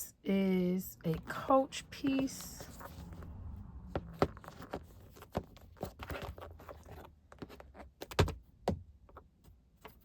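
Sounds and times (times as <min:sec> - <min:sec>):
wallet handling clicks and rustling: 0:04.0 - 0:08.4.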